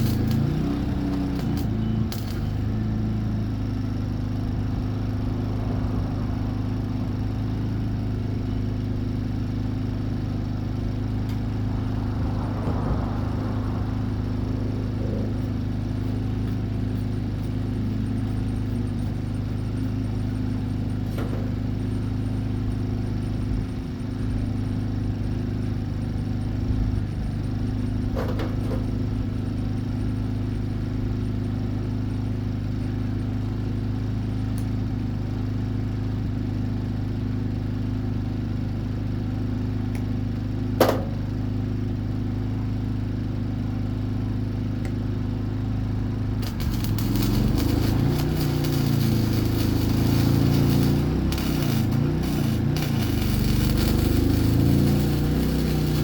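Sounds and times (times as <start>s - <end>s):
machine hum: 0.0s - 7.3s, 46.0s - 56.0s.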